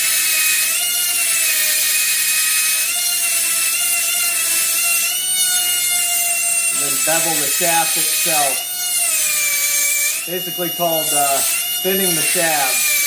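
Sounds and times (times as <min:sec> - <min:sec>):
rotary grinding tool whine: 0:00.0 - 0:13.0.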